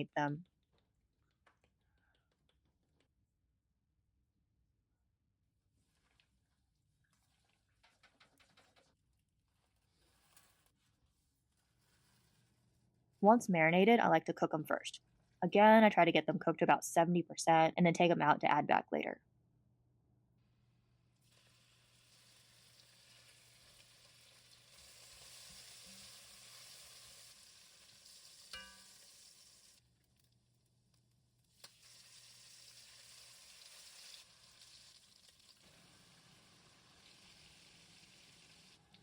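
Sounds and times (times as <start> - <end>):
chicken sizzling in a pan: 21.2 - 39.0.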